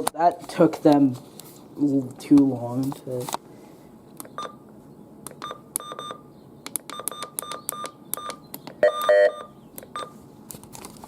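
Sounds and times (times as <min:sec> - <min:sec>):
low buzzing beep: 0:05.4 - 0:06.2, 0:06.9 - 0:10.1.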